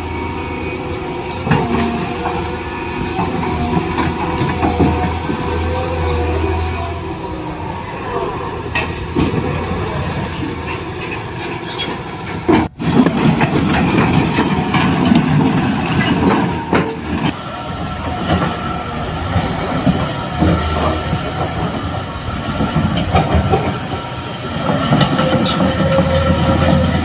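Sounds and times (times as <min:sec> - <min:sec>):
toy excavator motors and gears: 0:00.0 - 0:27.0.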